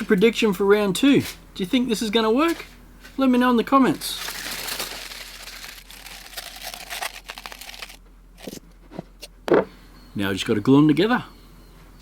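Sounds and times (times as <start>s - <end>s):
aluminium foil crumpling: 3.9s - 8.6s.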